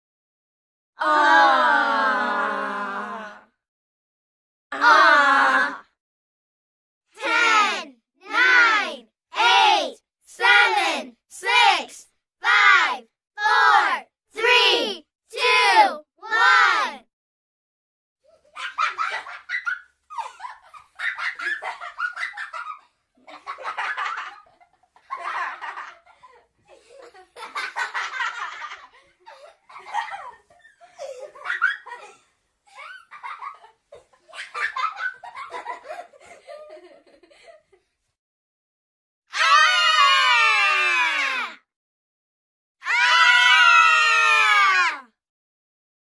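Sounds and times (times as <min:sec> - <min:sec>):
young child giggling: 0:18.5 - 0:37.8.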